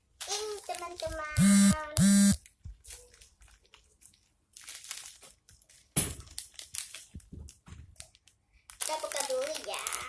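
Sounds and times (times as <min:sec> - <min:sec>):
plastic wrapper crinkling: 0:00.2 - 0:01.4, 0:02.4 - 0:10.0.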